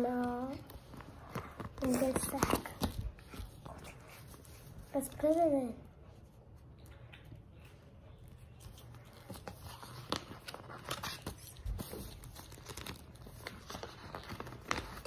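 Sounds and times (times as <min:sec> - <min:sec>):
packaging rustling and crinkling: 0:08.5 - 0:15.0.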